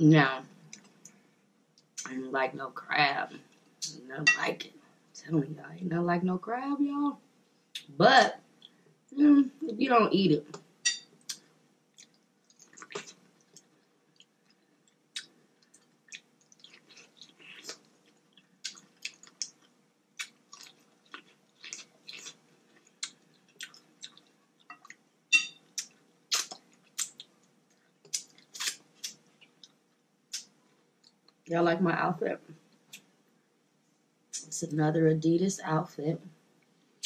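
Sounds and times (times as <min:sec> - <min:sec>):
person chewing wetly: 0:11.3 - 0:29.8.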